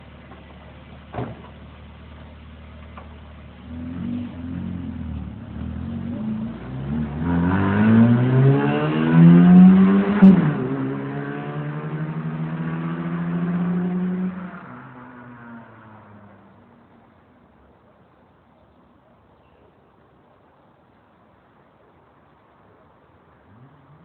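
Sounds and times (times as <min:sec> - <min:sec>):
exhaust crack: 0:00.0 - 0:12.6
car engine revving: 0:01.6 - 0:16.5, 0:23.3 - 0:24.0.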